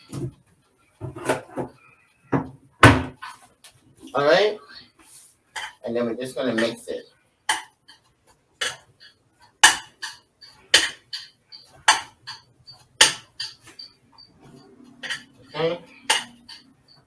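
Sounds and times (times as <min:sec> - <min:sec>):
utensil knocking against a pot: 0:09.6 - 0:13.6, 0:15.0 - 0:16.7.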